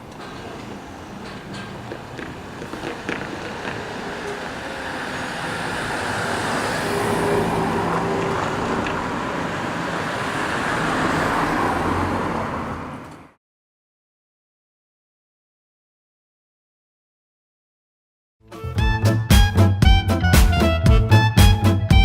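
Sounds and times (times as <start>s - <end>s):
electric train rumbling: 0.0s - 11.2s.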